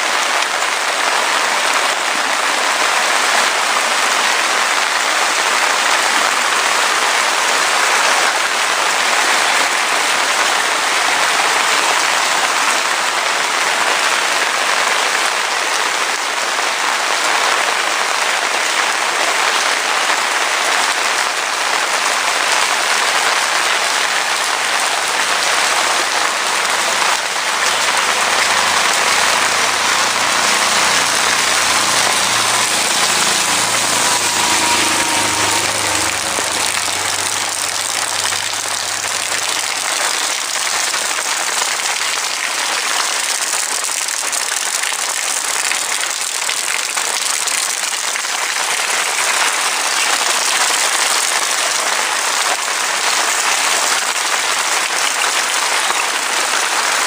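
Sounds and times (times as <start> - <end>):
heavy rain: 0.0 - 57.0
low engine hum: 24.4 - 40.1.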